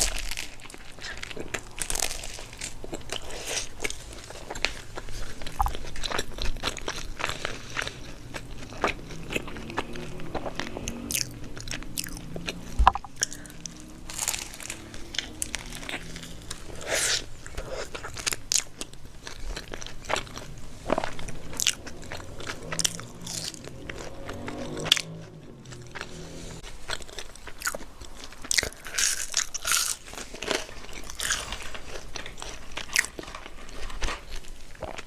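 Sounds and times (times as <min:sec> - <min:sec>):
crunchy bites and wet chewing: 0:00.0 - 0:35.0.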